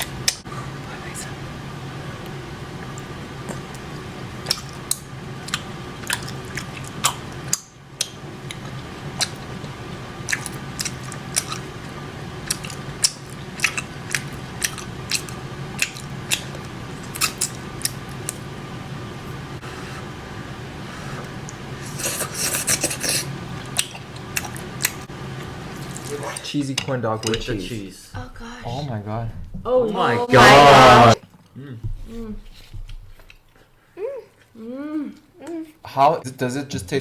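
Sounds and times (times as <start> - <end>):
steady low hum: 0.0 - 26.5
chewing and mouth smacking: 4.4 - 11.7, 12.4 - 18.4, 21.4 - 25.0.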